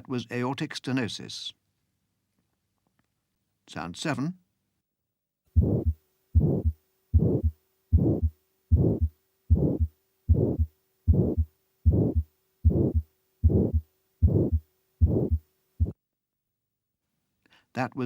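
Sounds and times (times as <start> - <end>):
heart murmur: 5.6 - 16.0
heartbeat through stethoscope: 5.6 - 16.0.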